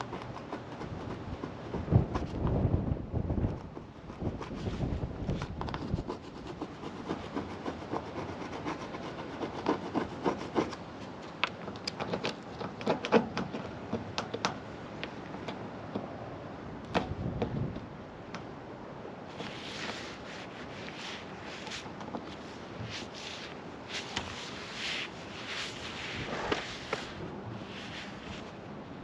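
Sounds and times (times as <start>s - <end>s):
hands rubbing and scraping: 19.3s - 28.6s.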